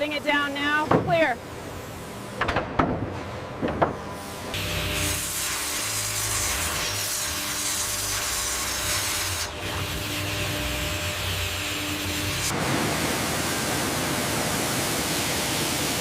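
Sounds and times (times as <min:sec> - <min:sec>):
machinery hiss: 0:04.2 - 0:16.0.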